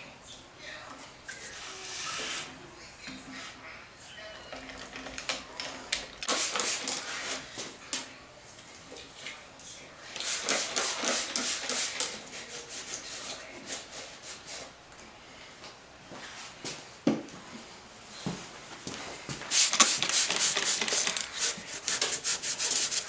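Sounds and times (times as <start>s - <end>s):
rasping scrubbing strokes: 19.8s - 23.0s.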